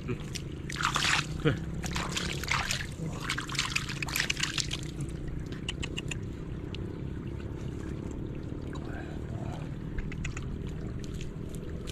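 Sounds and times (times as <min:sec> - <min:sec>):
low hum: 0:00.0 - 0:11.9
water splashing and trickling: 0:00.0 - 0:11.9.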